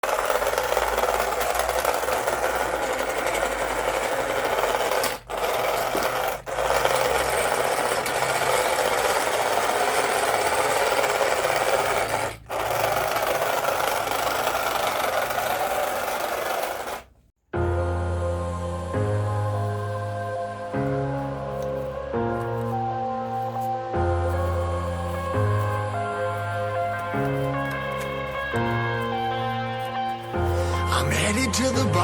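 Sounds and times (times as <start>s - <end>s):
small electric motor whirring: 0.0s - 17.1s.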